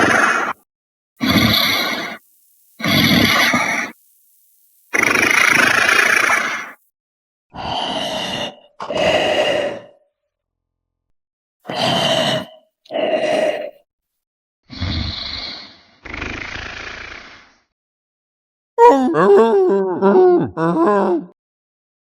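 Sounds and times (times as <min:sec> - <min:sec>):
cartoon cow-like lows and grunts: 0:18.8 - 0:21.4.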